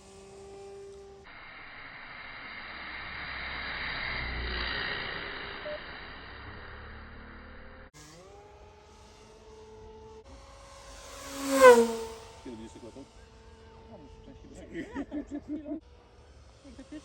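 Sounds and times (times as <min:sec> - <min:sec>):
faint steady whine: 0:00.0 - 0:07.9
passing engine: 0:00.0 - 0:14.7.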